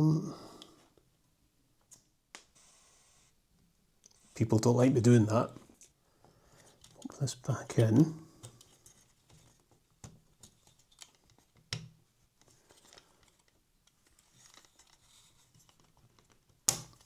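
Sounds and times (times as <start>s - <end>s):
faint clicks of small parts: 5.6s - 7.2s, 8.4s - 17.0s.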